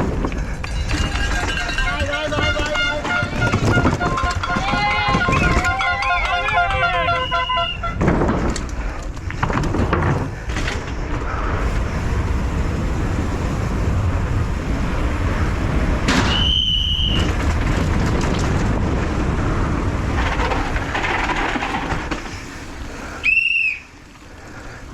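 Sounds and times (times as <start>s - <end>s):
bike knocks: 0.0s - 6.7s, 7.8s - 11.1s
mountain bike rattling over rough ground: 0.0s - 24.9s.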